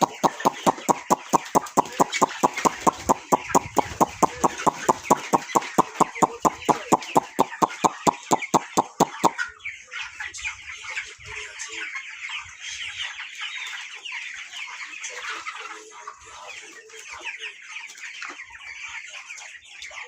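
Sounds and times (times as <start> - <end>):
rapid metallic ticks: 0.0 - 9.4
chickens clucking: 0.0 - 20.0.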